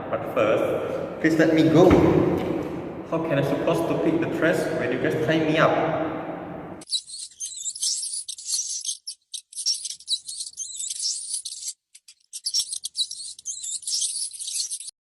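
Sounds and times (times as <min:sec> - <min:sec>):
high-pitched chirping: 0:06.8 - 0:15.0.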